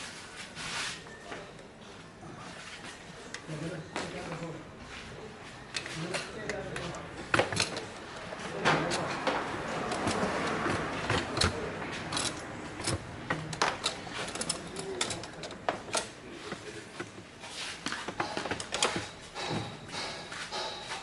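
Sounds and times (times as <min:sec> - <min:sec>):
tools and metal parts clinking: 0:05.7 - 0:17.2, 0:18.0 - 0:21.0.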